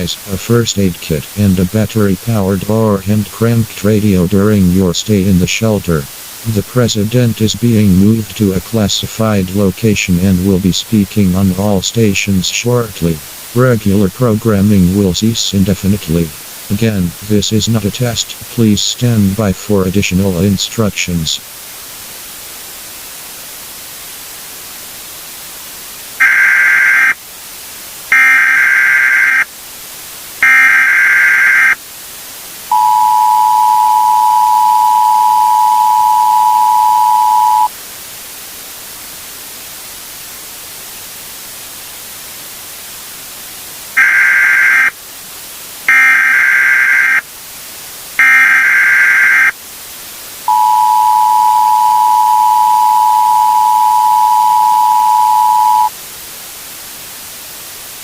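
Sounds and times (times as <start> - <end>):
steady hiss: 0.0 - 58.0
data bursts: 26.2 - 27.2, 28.1 - 29.5, 30.4 - 31.8, 32.7 - 37.7, 44.0 - 44.9, 45.9 - 47.2, 48.2 - 49.5, 50.5 - 55.9
two-tone attention signal: 32.7 - 37.7, 48.2 - 49.5, 50.5 - 55.9.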